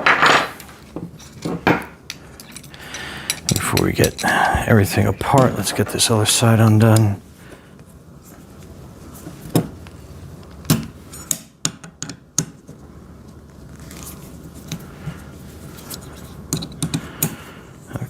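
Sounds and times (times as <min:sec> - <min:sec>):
metal tools clinking: 0:00.0 - 0:07.0.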